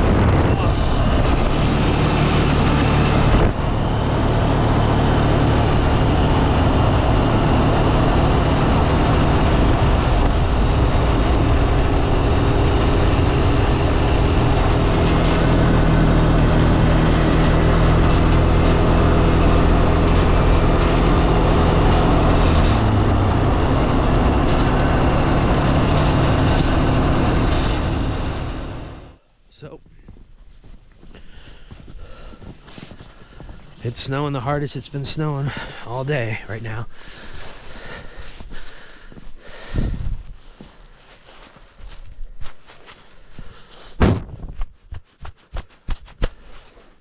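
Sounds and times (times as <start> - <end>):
quad engine running: 0.0 - 29.2.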